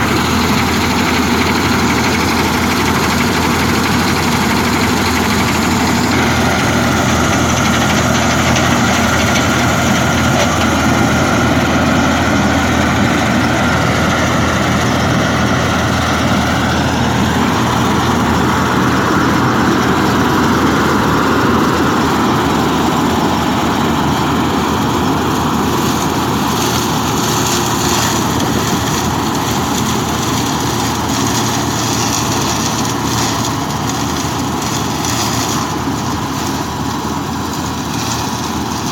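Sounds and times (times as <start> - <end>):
combine harvester drone: 0.0 - 38.9
machinery whine: 0.0 - 38.9.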